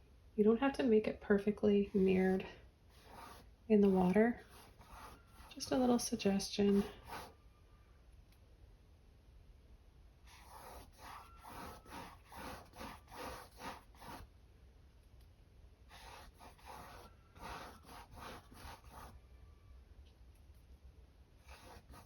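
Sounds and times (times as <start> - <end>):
paintbrush scrubbing on canvas: 1.8 - 7.3, 10.3 - 14.3, 15.9 - 19.2, 21.4 - 22.0.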